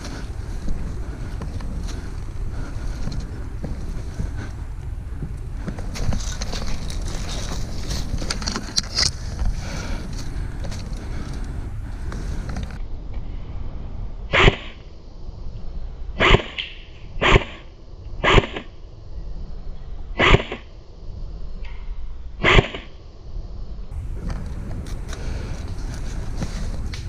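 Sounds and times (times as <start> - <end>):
outdoor background noise: 0.0 - 27.0
airsoft gun shots: 14.3 - 14.8, 16.2 - 18.7, 20.2 - 20.6, 22.4 - 22.9.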